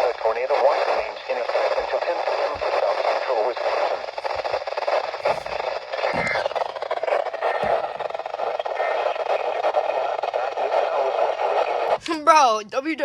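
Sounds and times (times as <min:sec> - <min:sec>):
radio static hiss: 0:00.0 - 0:13.0
soft low thuds: 0:04.0 - 0:06.8.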